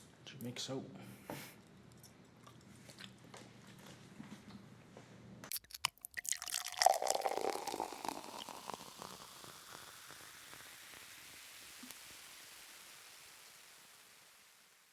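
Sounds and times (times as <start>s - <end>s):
water dripping and splashing: 5.5s - 14.2s
faint steady hiss: 6.5s - 14.9s.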